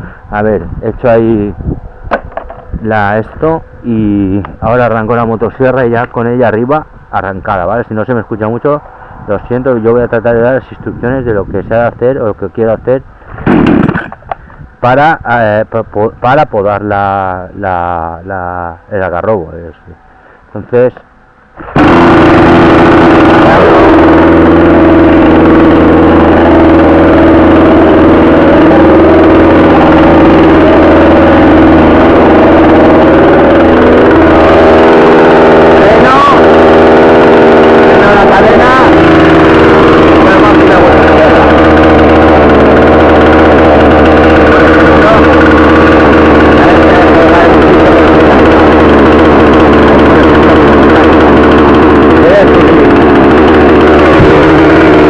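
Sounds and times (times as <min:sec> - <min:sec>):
chainsaw idling: 0:00.0 - 0:07.0, 0:13.2 - 0:14.7, 0:20.0 - 0:55.0.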